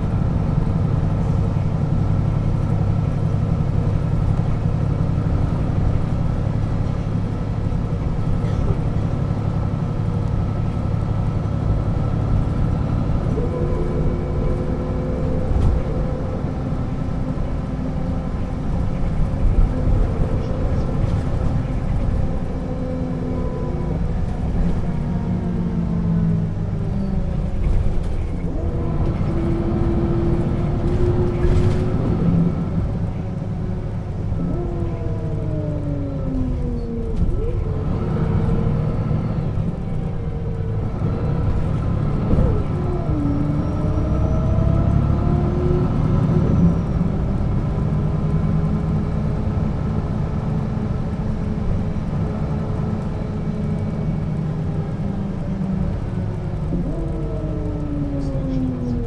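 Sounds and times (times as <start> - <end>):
diesel bus engine rumble: 0.0 - 59.0.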